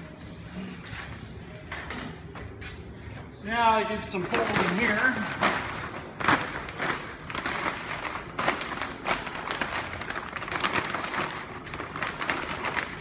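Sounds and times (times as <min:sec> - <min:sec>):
plastic film crinkling: 0:04.1 - 0:13.0.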